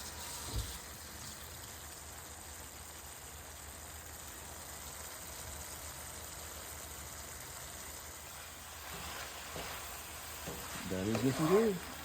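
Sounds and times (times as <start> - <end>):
meat simmering in a pan: 0.0 - 12.0.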